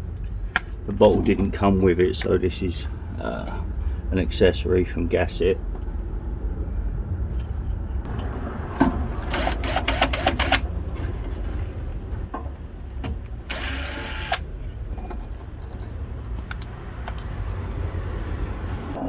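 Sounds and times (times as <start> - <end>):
steady low rumble: 0.0 - 19.0
clicks and knocks of tool work: 0.6 - 2.4, 12.3 - 18.3
power drill running: 9.3 - 10.6, 13.5 - 14.4.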